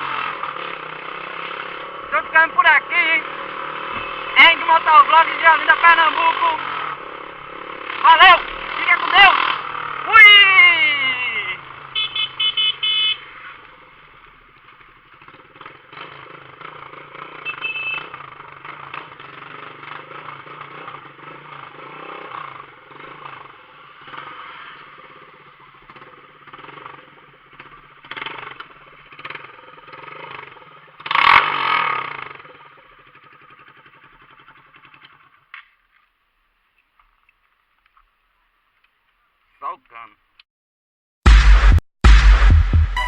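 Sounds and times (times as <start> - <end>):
motorcycle engine running: 0.0 - 35.8, 41.3 - 43.0
horn-like beep: 4.0 - 4.6, 12.0 - 13.3, 17.4 - 18.1, 41.3 - 43.0
loud exhaust burst: 41.3 - 43.0.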